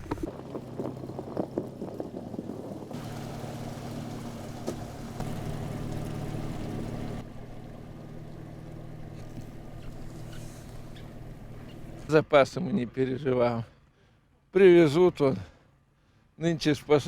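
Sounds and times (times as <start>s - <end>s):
engine running steadily: 0.0s - 12.1s
engine hum: 0.0s - 14.2s.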